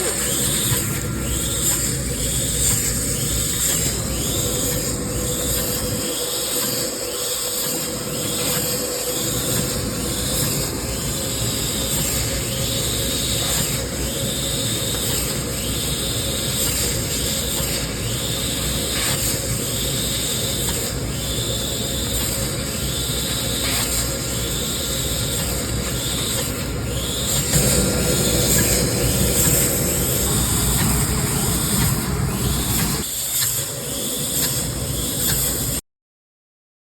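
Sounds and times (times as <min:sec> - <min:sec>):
laser cutter hissing: 0:00.0 - 0:35.7
constant hum: 0:26.6 - 0:33.1
drives whining: 0:26.9 - 0:33.1.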